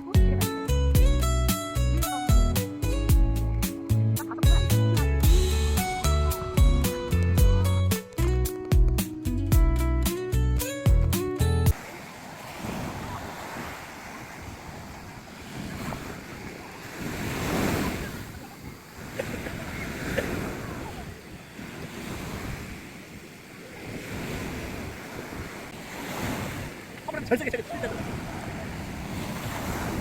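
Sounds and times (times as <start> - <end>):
sea waves breaking on beach: 11.7 - 30.0
wind rumbling on microphone: 12.4 - 30.0.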